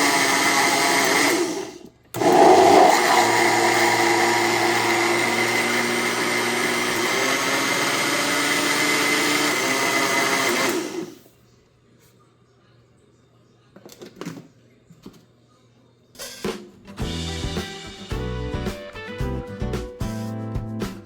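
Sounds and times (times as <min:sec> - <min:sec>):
blender running: 0:00.0 - 0:11.2.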